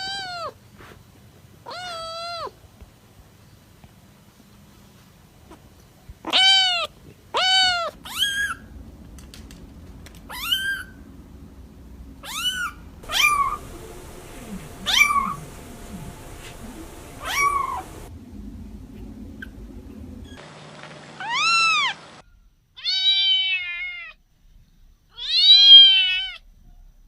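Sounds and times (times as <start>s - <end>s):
kitten mewing: 12.2s - 18.1s.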